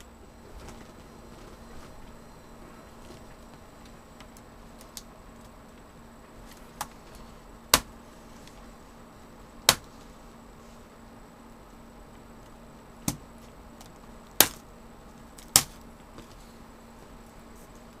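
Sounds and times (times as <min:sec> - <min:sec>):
plastic clips snapping: 0:15.4 - 0:15.8.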